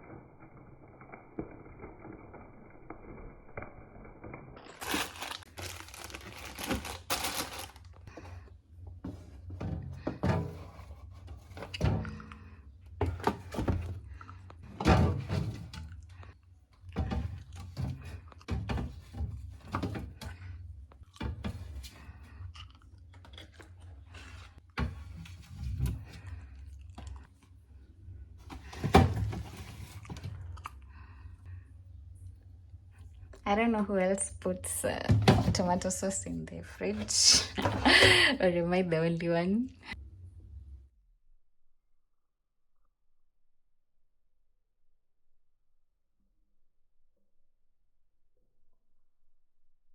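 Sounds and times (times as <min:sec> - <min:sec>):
rustling: 0:00.0 - 0:08.0.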